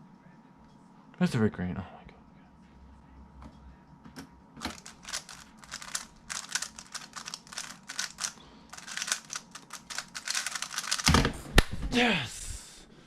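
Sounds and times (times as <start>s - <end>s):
puzzle cube plastic clicking: 4.6s - 11.2s.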